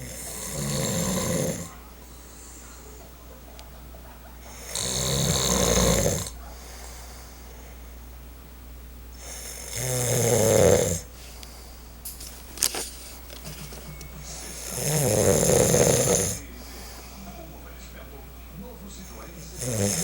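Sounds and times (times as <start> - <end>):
man snoring: 0.0 - 1.8, 4.4 - 6.4, 9.2 - 11.1, 14.4 - 17.0, 19.6 - 20.0
quiet breathing: 0.0 - 8.2, 10.4 - 12.1, 14.2 - 20.0.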